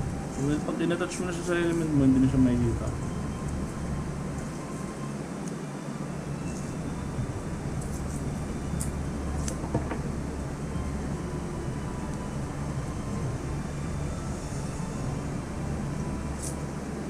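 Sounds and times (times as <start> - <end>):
low background rumble: 0.0 - 17.0.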